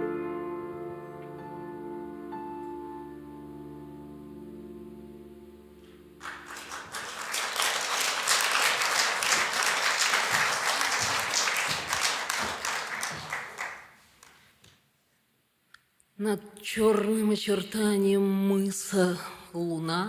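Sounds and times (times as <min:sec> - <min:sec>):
audience applauding: 0:06.2 - 0:14.4.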